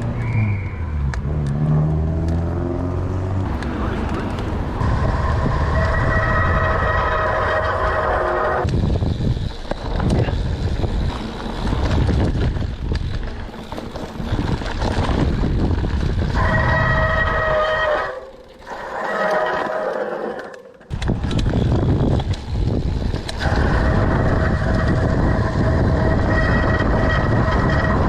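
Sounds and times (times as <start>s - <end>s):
brakes squealing: 0.0s - 1.9s, 3.4s - 28.0s
wind: 0.0s - 28.0s
tyre rolling noise: 13.4s - 28.0s.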